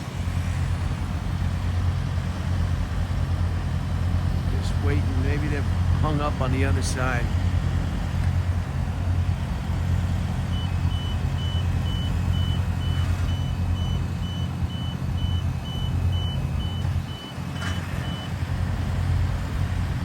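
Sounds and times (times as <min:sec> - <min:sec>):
diesel engine rumble: 0:00.0 - 0:20.0
high-pitched warning beeps: 0:10.4 - 0:18.3.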